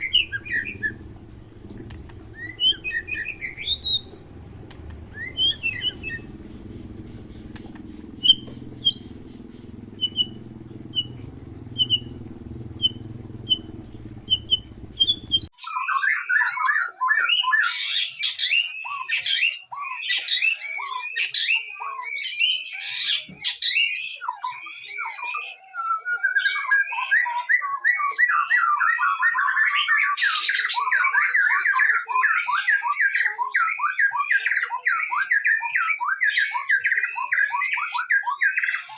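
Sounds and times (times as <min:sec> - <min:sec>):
low hum: 0:00.0 - 0:15.5
bird chirping: 0:00.0 - 0:16.5
bird song with chattering trill: 0:00.0 - 0:38.9.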